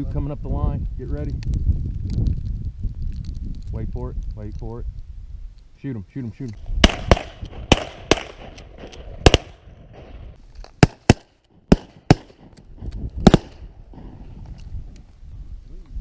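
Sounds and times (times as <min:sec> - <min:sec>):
shotguns firing: 0:06.8 - 0:12.6, 0:13.2 - 0:14.1.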